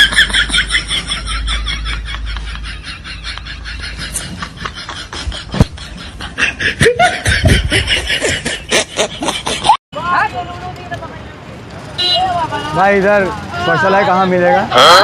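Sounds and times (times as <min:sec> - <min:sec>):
person laughing: 0:00.0 - 0:09.8.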